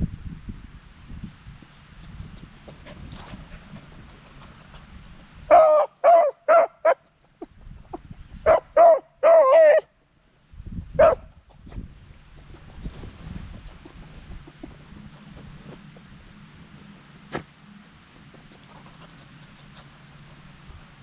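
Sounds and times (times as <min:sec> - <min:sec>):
dog baying barks: 0:05.5 - 0:07.1, 0:08.5 - 0:09.9, 0:11.0 - 0:11.3.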